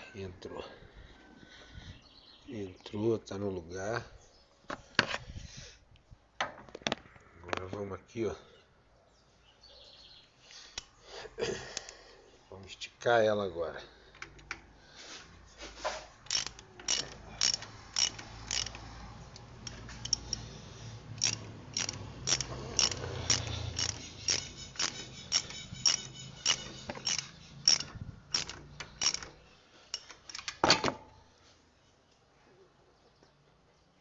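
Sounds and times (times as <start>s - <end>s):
ratchet wrench clicking: 16.2s - 30.6s.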